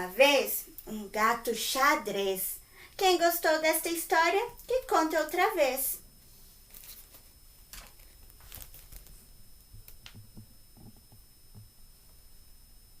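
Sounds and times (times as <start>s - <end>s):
faint clicks and rustles: 6.6s - 12.2s.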